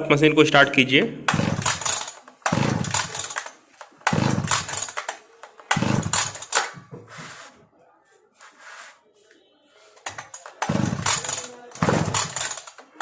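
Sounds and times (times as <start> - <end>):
recoil starter pull whirring: 1.3 - 6.8, 10.0 - 13.0.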